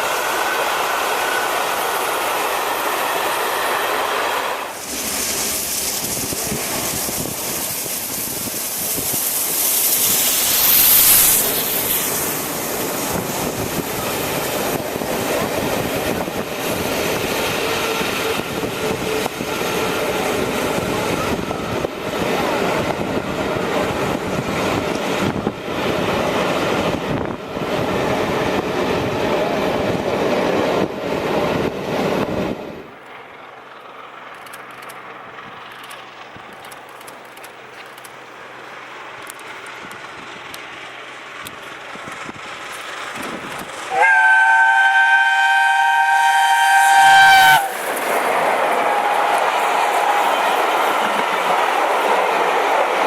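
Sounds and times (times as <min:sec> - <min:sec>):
steam train running past: 0:00.0 - 0:53.0
steam locomotive whistle: 0:43.9 - 0:47.8.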